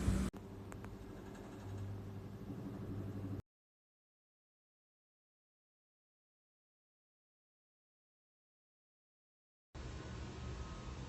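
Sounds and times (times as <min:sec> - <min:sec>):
low steady hum: 0:00.0 - 0:03.4.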